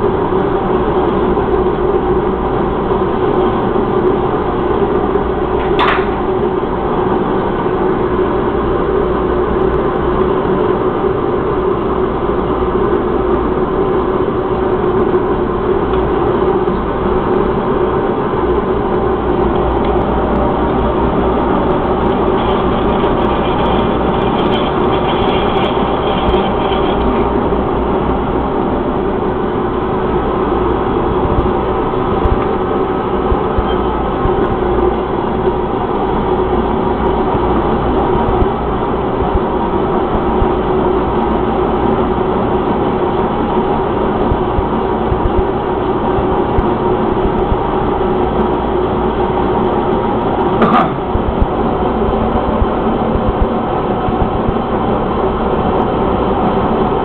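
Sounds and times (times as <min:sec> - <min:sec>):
faint high whine: 0:00.0 - 0:57.0
machine tool running: 0:15.6 - 0:29.3.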